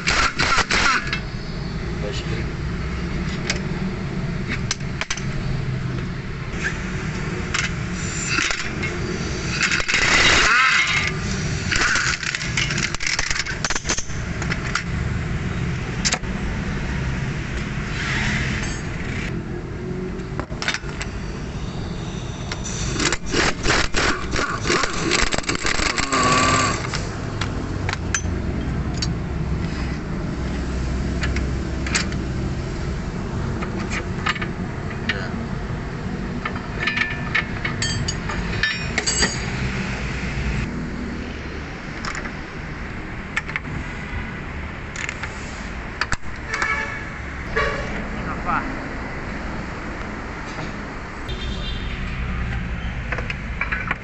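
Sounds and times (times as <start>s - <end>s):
metal tools clinking: 28.1s - 29.1s, 36.4s - 39.7s.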